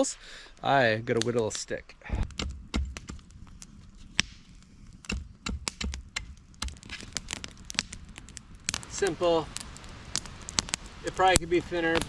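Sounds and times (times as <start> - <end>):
axe chopping wooden stick: 5.0 - 7.0.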